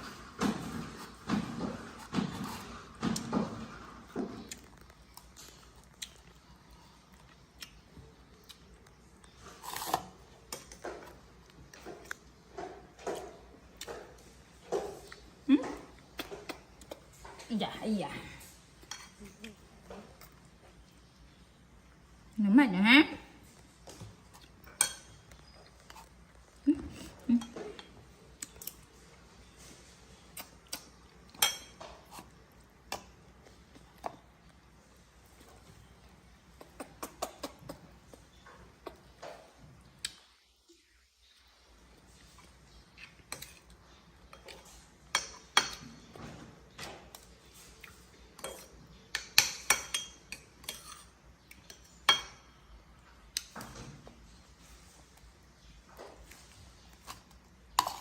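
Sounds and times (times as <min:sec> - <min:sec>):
spoon clinking against bowl: 0:48.4 - 0:51.1.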